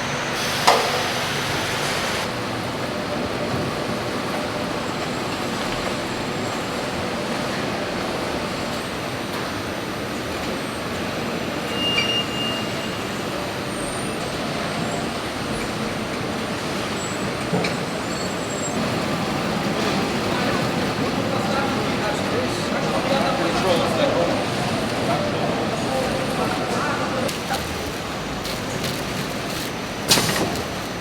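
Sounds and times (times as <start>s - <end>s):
heavy machinery running: 0.0s - 8.7s, 18.8s - 31.0s.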